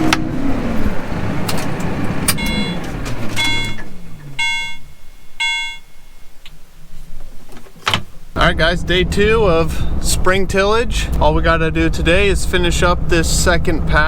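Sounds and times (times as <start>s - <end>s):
tractor engine shutting off: 0.0s - 5.1s
warning beeper: 2.3s - 6.3s.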